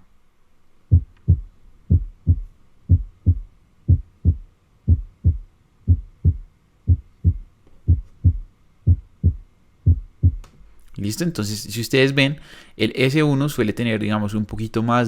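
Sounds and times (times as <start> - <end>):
heartbeat lub-dub: 0.9 - 10.5.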